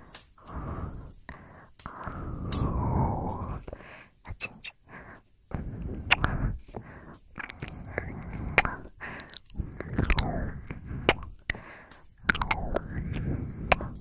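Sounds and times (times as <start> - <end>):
breathy mouth swells: 0.4 - 14.0
wet lip smacks and kisses: 4.2 - 4.8, 6.0 - 6.5, 7.3 - 14.0.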